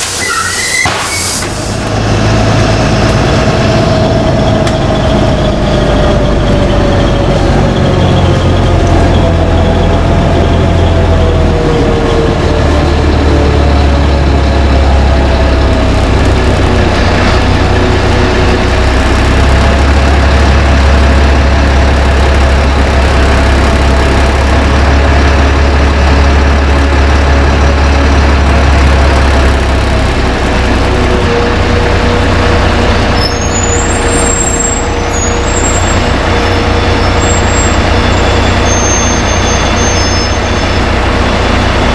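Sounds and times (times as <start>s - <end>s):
bus diesel engine rumble: 0.0s - 41.9s
drivetrain whine: 0.0s - 41.9s
high-pitched squeal: 0.0s - 41.9s.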